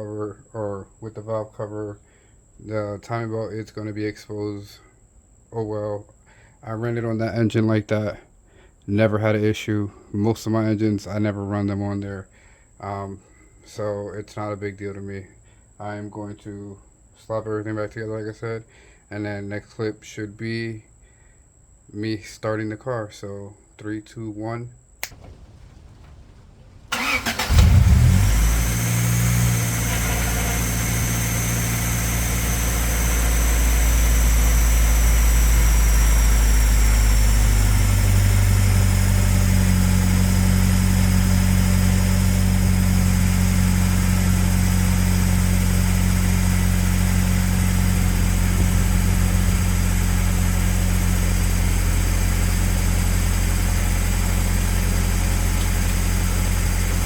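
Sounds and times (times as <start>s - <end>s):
car engine cranking and idling: 25.0s - 57.0s.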